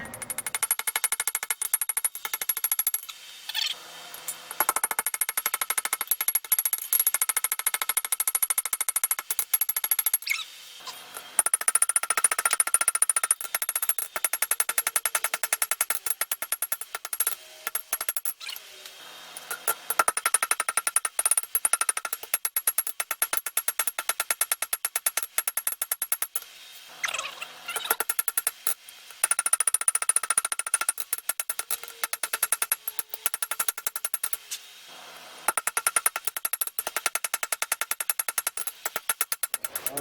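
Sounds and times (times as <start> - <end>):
hammer striking steel on anvil: 0.0 - 0.6.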